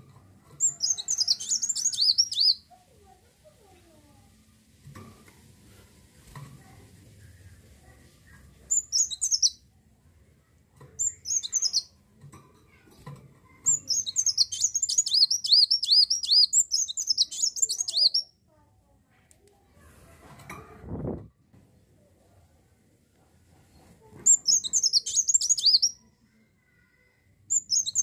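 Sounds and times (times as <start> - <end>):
sunbird twittering: 0.6 - 2.6, 8.7 - 9.6, 11.0 - 11.9, 13.7 - 18.3, 24.3 - 26.0, 27.5 - 28.0.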